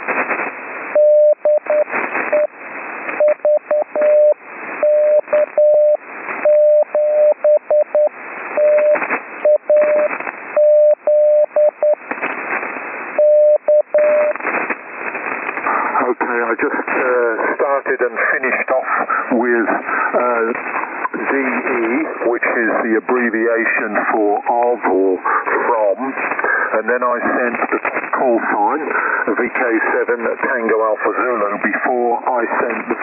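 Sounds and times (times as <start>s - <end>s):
static crashes: 0.0s - 1.0s, 12.0s - 13.2s, 14.2s - 24.8s, 25.7s - 33.0s
radio hiss: 0.0s - 33.0s
morse code tone: 3.2s - 12.0s, 13.2s - 14.3s.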